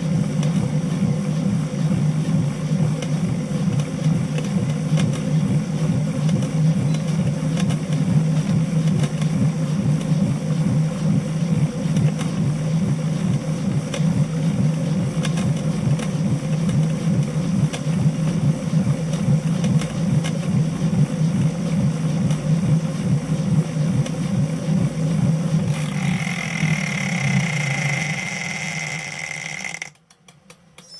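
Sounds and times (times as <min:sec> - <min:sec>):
bike trainer pulsing low rumble: 0:00.0 - 0:30.0
high-pitched whine: 0:25.5 - 0:29.9.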